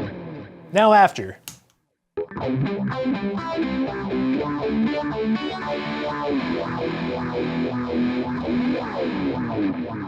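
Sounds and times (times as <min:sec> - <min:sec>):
electric guitar with phaser sweep: 0:02.3 - 0:10.0.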